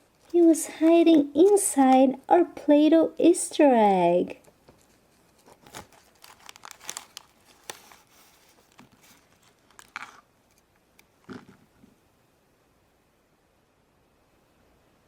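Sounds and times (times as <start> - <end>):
light clicks and crinkly rustles: 0.0 - 2.0, 4.4 - 11.6.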